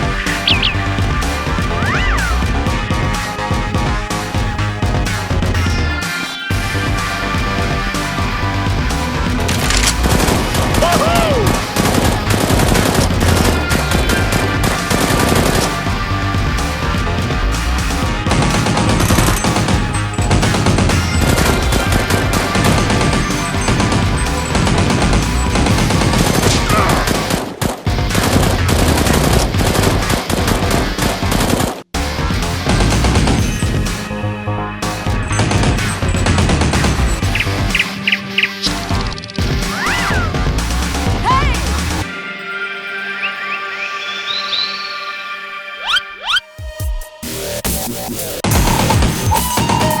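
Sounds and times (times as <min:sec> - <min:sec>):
background music: 0:00.0 - 0:50.0
rapid automatic gunfire: 0:09.5 - 0:10.9, 0:11.5 - 0:16.0, 0:18.2 - 0:31.8, 0:35.3 - 0:39.7.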